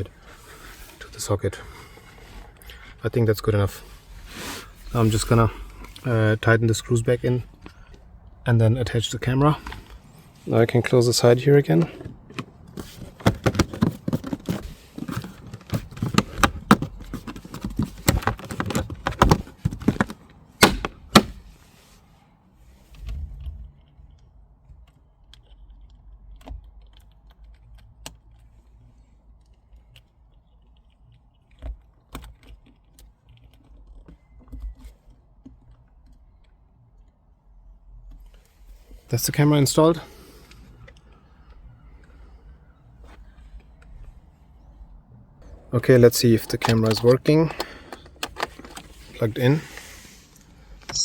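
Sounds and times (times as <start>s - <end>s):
plastic trim clicks and rattles: 46.2s - 49.0s.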